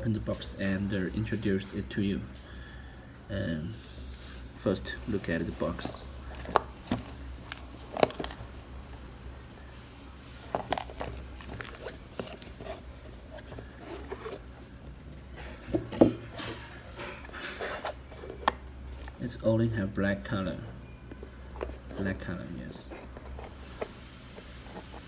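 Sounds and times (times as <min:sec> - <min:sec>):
box being handled and opened: 0:04.2 - 0:19.5, 0:20.8 - 0:25.0.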